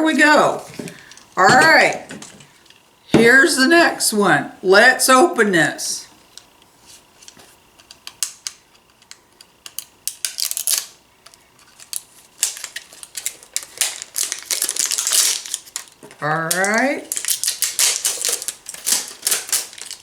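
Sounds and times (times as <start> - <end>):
packaging clicks and crinkling: 7.2 - 20.0.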